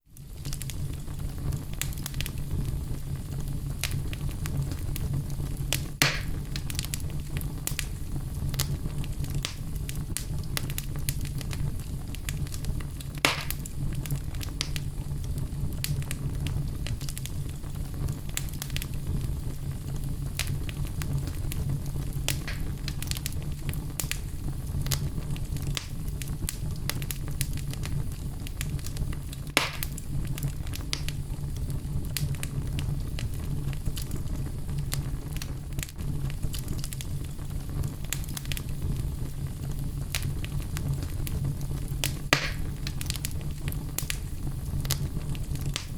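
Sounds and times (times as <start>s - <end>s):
fire crackling: 0.0s - 45.9s
fire flames rumbling: 0.0s - 45.9s
loud wood pops: 6.0s - 6.4s, 13.2s - 13.7s, 22.3s - 22.7s, 29.6s - 30.0s, 42.3s - 42.7s.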